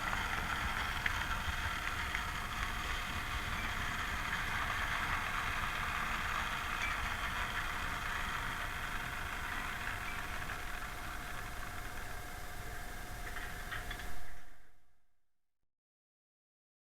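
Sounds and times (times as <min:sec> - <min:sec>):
model train running on track: 0:00.0 - 0:14.1.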